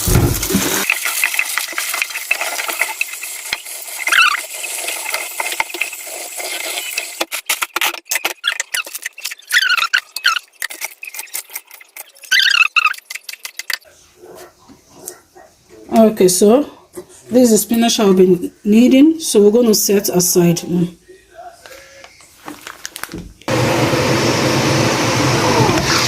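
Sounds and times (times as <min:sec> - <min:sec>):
tap water running: 0:00.0 - 0:07.3
short high squeaks: 0:12.1 - 0:13.1
wet leaves crackling rustle: 0:22.4 - 0:23.1.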